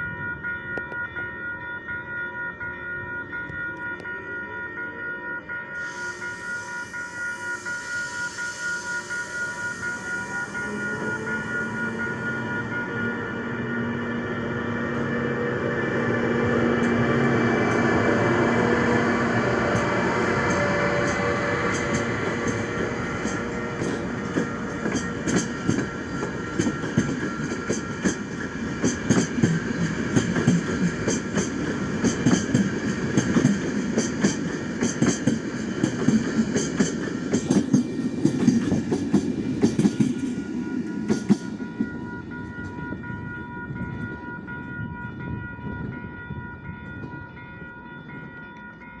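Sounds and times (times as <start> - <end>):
steady high-pitched tone: 3.8 - 34.6
train rumbling on rails: 5.8 - 48.4.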